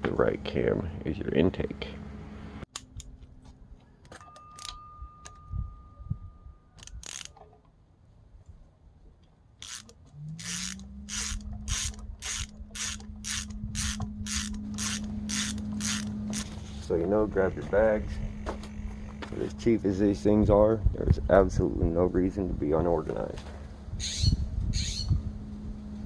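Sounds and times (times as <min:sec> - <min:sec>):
low hum: 0:00.0 - 0:07.3, 0:07.9 - 0:26.0
ratchet wrench clicking: 0:06.8 - 0:07.4, 0:09.6 - 0:16.6.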